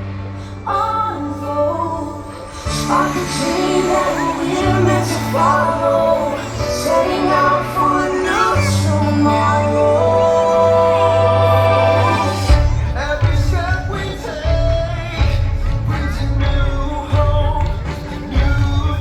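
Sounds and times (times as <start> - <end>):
orchestral music over loudspeakers: 0.0 - 19.0
woman singing: 0.4 - 15.4.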